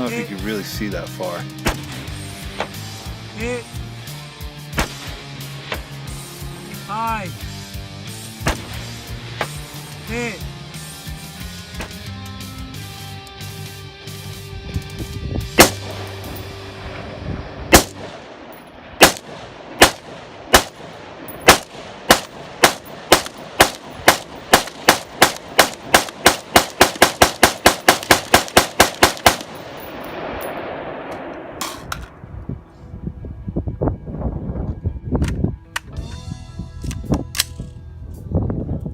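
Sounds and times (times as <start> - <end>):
gunshots: 4.7 - 5.9, 8.4 - 9.6, 15.6 - 16.4, 17.7 - 32.0.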